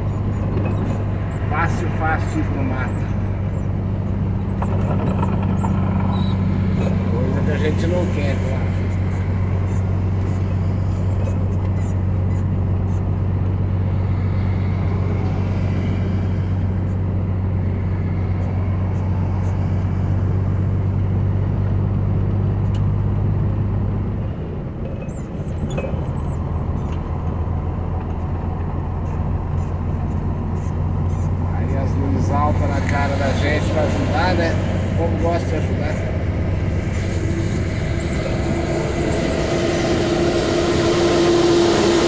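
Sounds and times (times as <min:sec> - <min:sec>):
road noise: 0:00.0 - 0:42.0
vehicle engine drone: 0:00.0 - 0:42.0.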